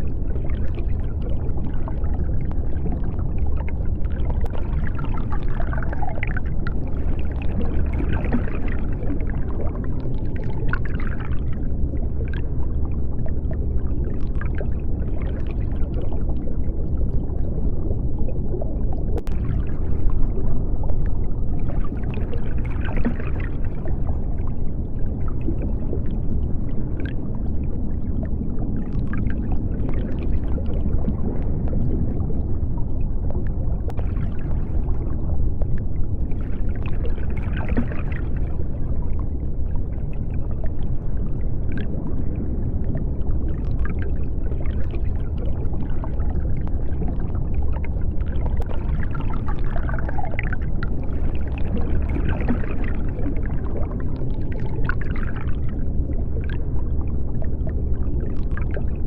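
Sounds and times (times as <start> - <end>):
deep underwater rumble: 0.0 - 59.0
bubbling clicks: 18.2 - 24.5.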